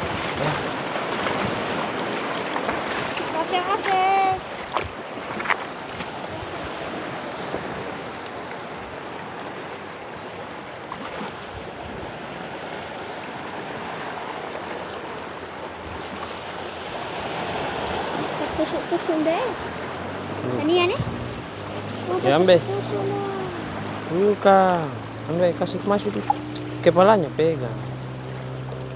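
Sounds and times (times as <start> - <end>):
small surf on a beach: 0.0 - 28.9
wind on the microphone: 20.4 - 22.2.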